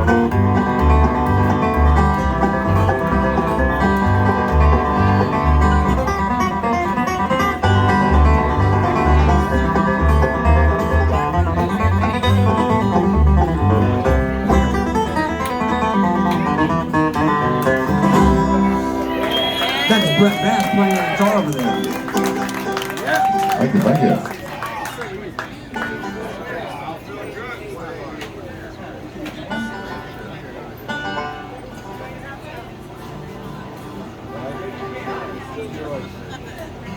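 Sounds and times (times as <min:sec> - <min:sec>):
plucked banjo: 0:00.0 - 0:19.2, 0:25.7 - 0:26.7, 0:29.3 - 0:36.9
bass line: 0:00.0 - 0:19.6
acoustic guitar: 0:00.0 - 0:23.1, 0:29.4 - 0:36.9.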